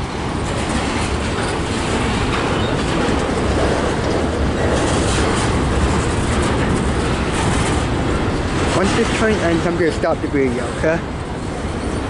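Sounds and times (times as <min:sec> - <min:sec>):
freight train wheels on rails: 0:00.0 - 0:12.0.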